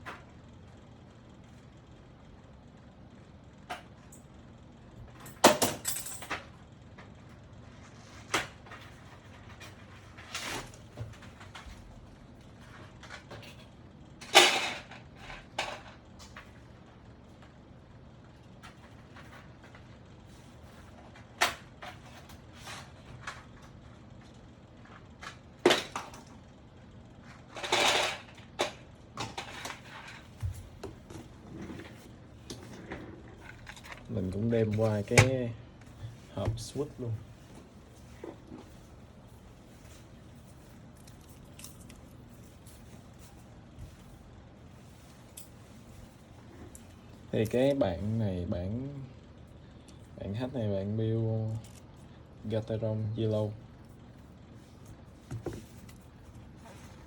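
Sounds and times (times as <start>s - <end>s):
keyboard parts and boxes handled: 27.4s - 47.9s, 54.6s - 57.0s.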